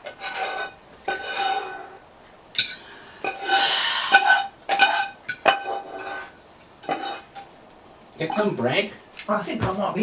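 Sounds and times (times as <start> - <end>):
cutlery scraping and clinking on plates: 0.0 - 2.0, 2.6 - 7.5.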